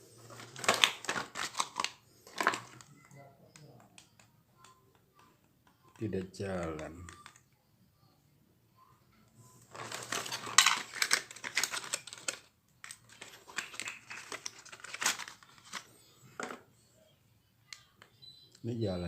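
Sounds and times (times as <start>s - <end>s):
plastic packaging crinkling: 0.1s - 3.1s, 9.6s - 16.0s.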